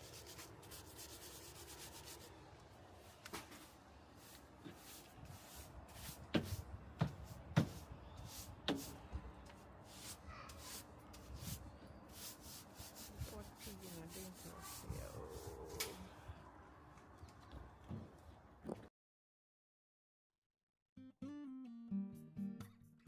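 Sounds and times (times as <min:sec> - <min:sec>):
stiff brush sweeping hard floor: 0:03.0 - 0:09.0, 0:09.8 - 0:15.9.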